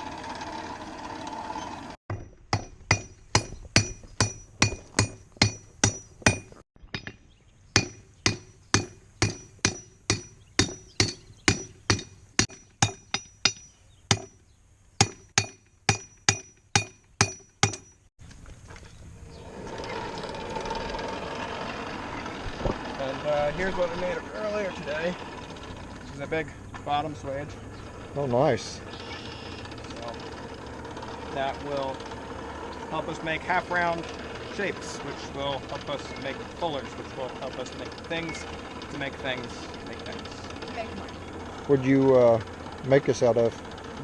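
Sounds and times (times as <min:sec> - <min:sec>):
hammer on hot steel and anvil: 0:02.5 - 0:07.1, 0:07.8 - 0:14.4, 0:15.0 - 0:18.0.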